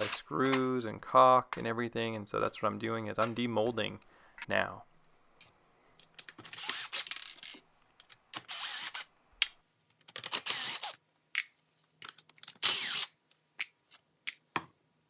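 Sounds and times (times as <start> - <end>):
screws grinding: 0.0 - 0.3, 6.4 - 7.6, 8.3 - 9.1, 10.2 - 11.0, 12.5 - 13.2.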